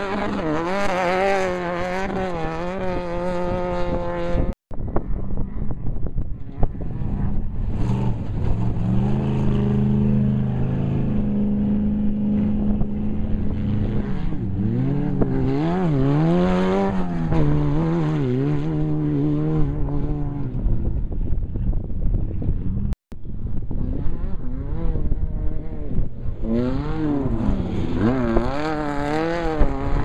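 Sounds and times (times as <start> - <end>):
race vehicle engine revving: 6.5 - 20.8, 23.7 - 30.0.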